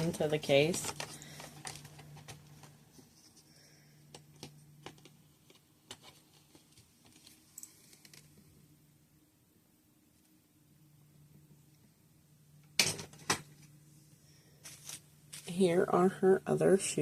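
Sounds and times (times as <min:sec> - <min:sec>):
plastic accessories clicking and tapping: 0:00.0 - 0:02.8, 0:04.0 - 0:08.3
faint low hum: 0:00.0 - 0:17.0.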